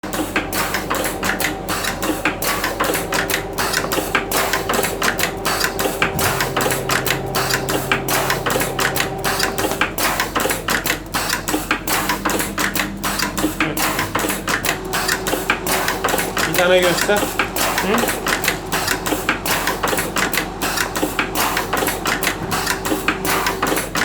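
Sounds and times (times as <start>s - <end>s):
winding machine clattering: 0.0s - 24.0s
low motor hum: 0.3s - 18.4s.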